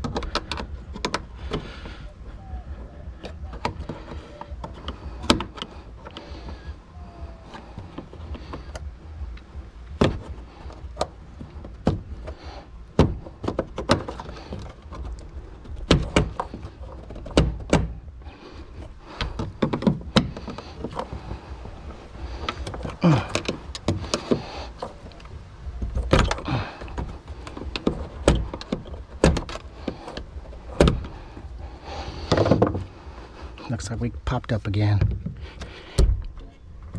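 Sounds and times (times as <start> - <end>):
fuel pump assembly knocking: 3.2 - 6.6, 7.5 - 18.1, 18.8 - 31.5.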